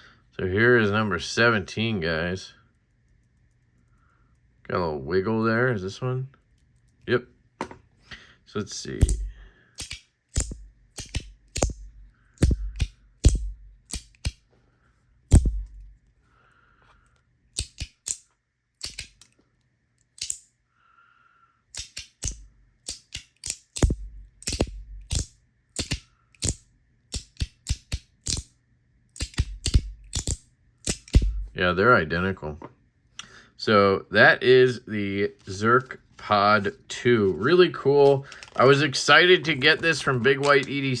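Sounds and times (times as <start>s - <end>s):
capsules snapping open and shut: 9.0s - 11.8s, 17.6s - 19.4s, 20.0s - 20.5s, 21.7s - 28.5s, 29.2s - 31.5s, 38.2s - 38.7s, 40.4s - 40.8s.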